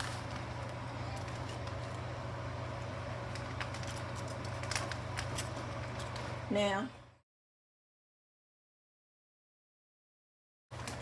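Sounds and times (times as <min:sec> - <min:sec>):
steady low hum: 0:00.0 - 0:07.2.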